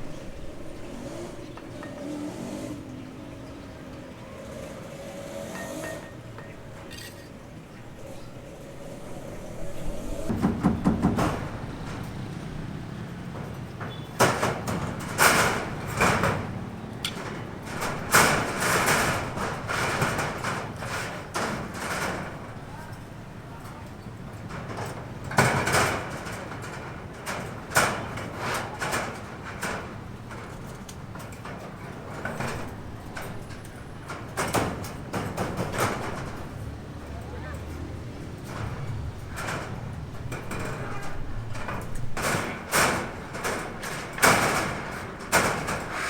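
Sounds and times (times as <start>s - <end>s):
scraping: 0.0s - 12.2s, 37.8s - 46.0s
steady low hum: 7.4s - 11.6s
knocks: 10.1s - 12.1s
knocks and scrapes: 37.7s - 46.0s.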